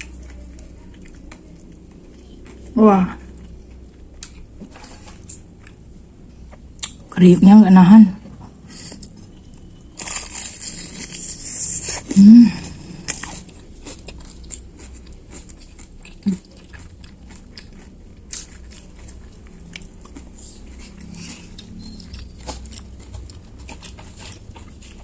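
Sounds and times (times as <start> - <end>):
chewing with small crunches: 0.0 - 7.1, 8.3 - 25.0
loud crunching of fried food: 9.9 - 25.0.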